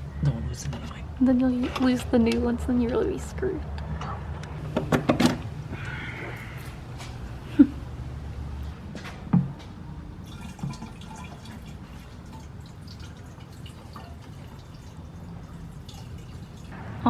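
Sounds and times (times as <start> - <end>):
fuel dripping: 10.2 - 16.8.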